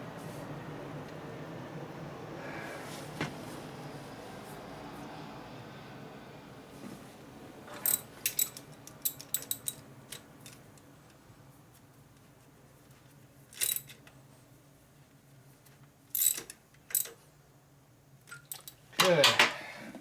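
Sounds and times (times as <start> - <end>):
metal tools clinking: 7.7 - 9.8.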